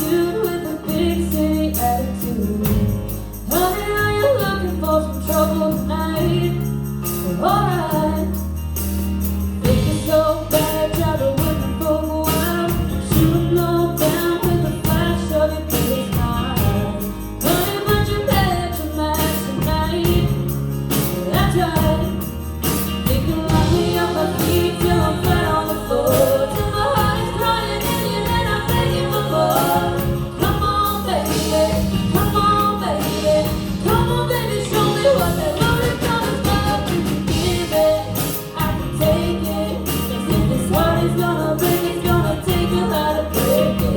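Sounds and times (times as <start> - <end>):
woman singing: 0.0 - 8.6, 9.6 - 43.9
band playing: 0.0 - 43.9.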